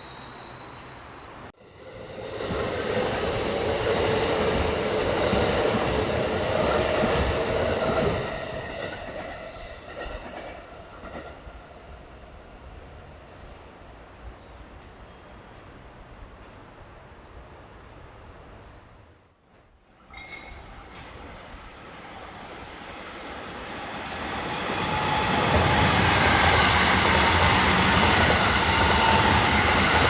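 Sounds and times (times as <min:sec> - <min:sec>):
train wheels squealing: 0:00.0 - 0:01.5, 0:20.0 - 0:30.0
train running on track: 0:00.0 - 0:14.4, 0:19.9 - 0:30.0.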